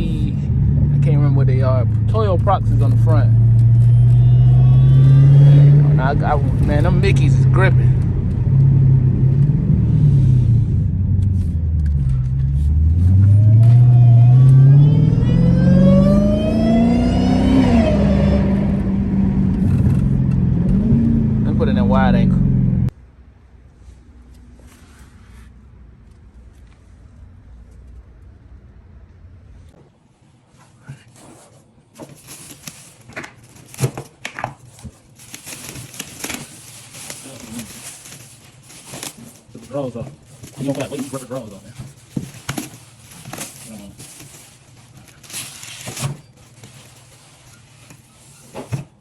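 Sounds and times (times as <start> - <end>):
car engine accelerating: 0.0 - 23.0
high supercharger whine: 0.0 - 23.0
rustling: 30.0 - 49.0.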